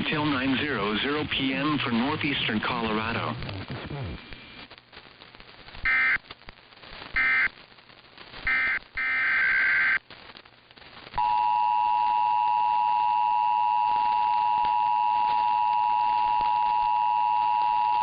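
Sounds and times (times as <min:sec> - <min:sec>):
harsh buzzing data bursts: 0:05.8 - 0:06.3, 0:07.1 - 0:07.6, 0:08.4 - 0:10.0.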